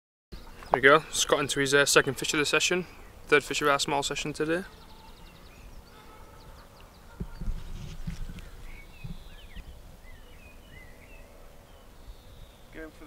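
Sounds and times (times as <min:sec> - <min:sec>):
small birds chirping: 0:00.4 - 0:13.0
low dull thumps: 0:07.1 - 0:09.8.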